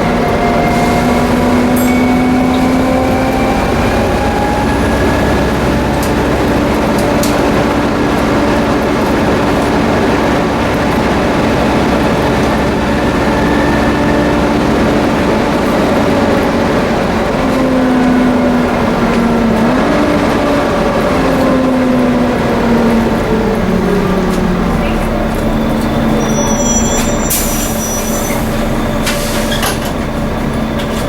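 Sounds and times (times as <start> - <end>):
bus engine whine: 0.0 - 31.0.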